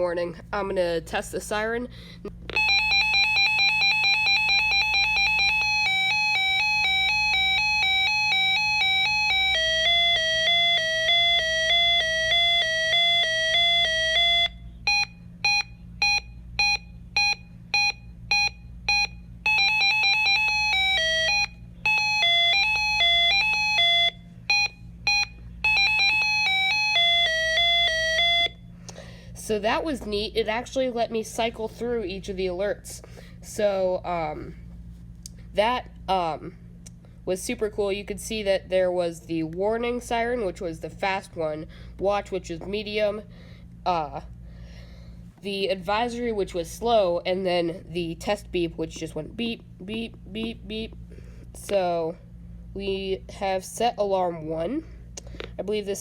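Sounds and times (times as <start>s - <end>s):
two-tone siren warble: 2.6s - 28.6s.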